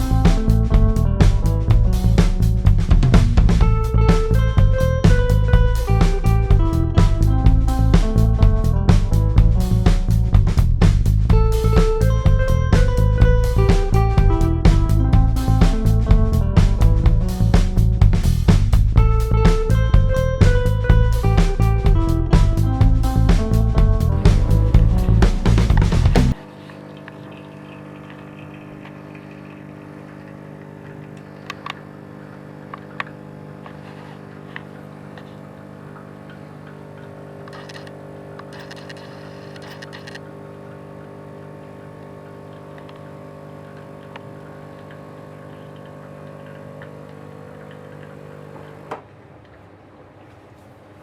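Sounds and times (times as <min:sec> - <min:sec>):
espresso machine pump hum: 0:22.8 - 0:49.0.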